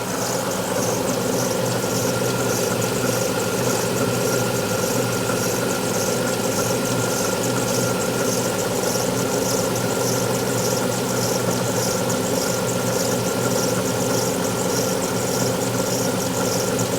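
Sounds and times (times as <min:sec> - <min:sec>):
car engine idling: 0:00.0 - 0:04.6.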